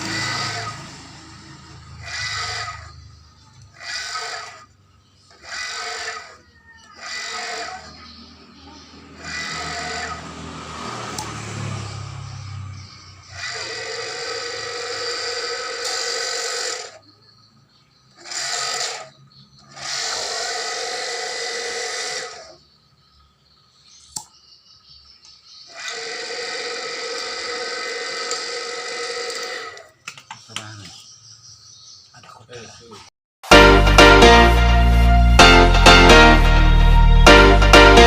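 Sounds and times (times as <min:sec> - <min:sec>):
small electric motor whining: 0:00.0 - 0:11.5, 0:13.2 - 0:17.1, 0:18.1 - 0:22.6, 0:25.7 - 0:30.0.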